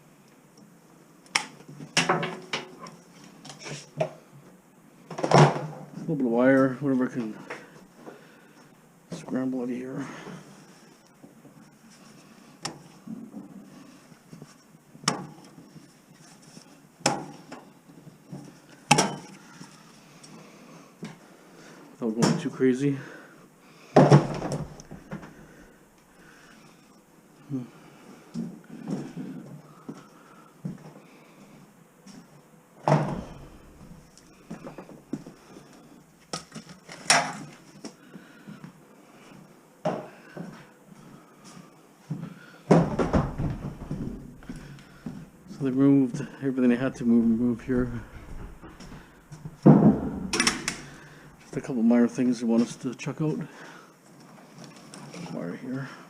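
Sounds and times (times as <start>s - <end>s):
objects knocking and clattering: 1.8s - 3.0s, 42.7s - 45.2s, 47.6s - 51.2s.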